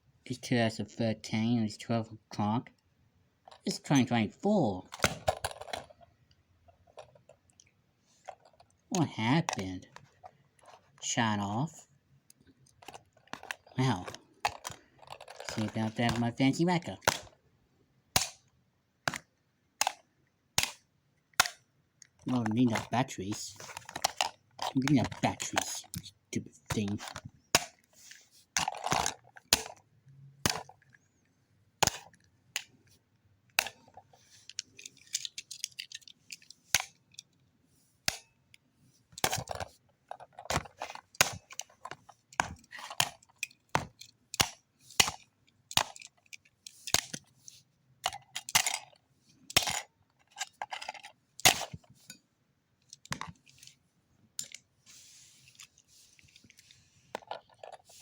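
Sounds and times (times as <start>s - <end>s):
small parts rattling and scraping: 3.4s - 17.4s, 19.1s - 58.0s
clicks and taps on plastic parts: 18.1s - 22.9s, 38.0s - 47.4s.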